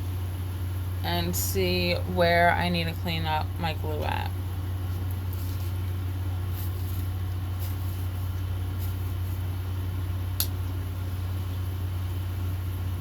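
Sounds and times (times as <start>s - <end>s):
steady low hum: 0.0s - 13.0s
sharp click: 10.4s - 10.6s.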